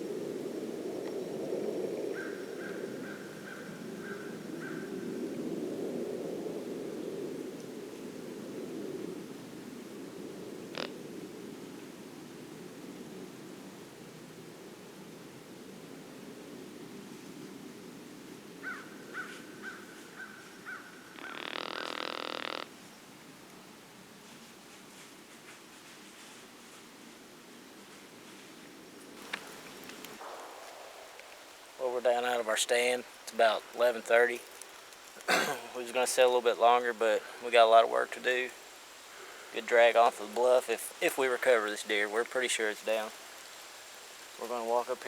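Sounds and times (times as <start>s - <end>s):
low rushing noise: 30.1s - 34.3s.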